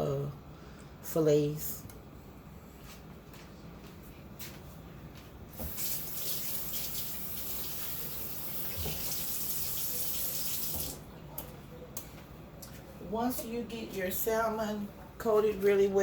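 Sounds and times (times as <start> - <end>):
kitchen tap water running into sink: 5.6 - 11.0.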